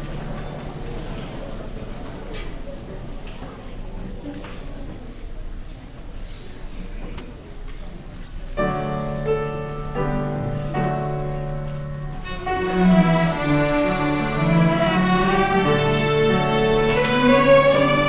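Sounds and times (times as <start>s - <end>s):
orchestra bowed strings: 11.8s - 18.0s.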